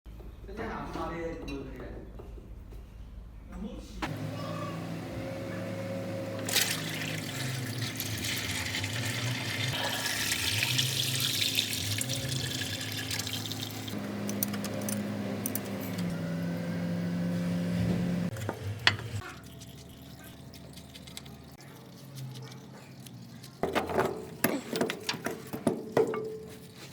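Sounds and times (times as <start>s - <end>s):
low machine hum: 4.1s - 22.5s.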